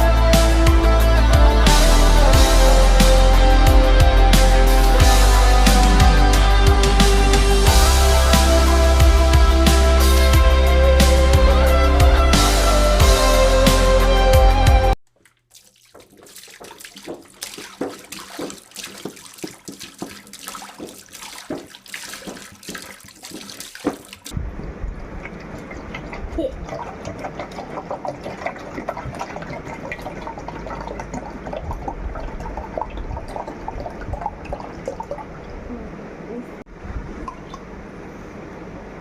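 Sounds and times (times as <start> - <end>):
water drips and splashes: 15.0 - 35.8, 37.2 - 37.7
water sloshing and trickling: 15.0 - 36.2, 37.1 - 37.9.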